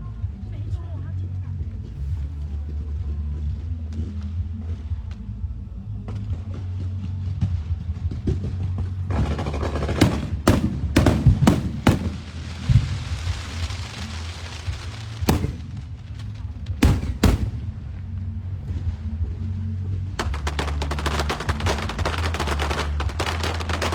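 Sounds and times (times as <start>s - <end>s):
steady low rumble: 0.0s - 23.9s
fireworks bangs: 9.1s - 19.0s, 20.2s - 23.9s
hissing crackle: 9.6s - 19.1s, 20.2s - 23.9s.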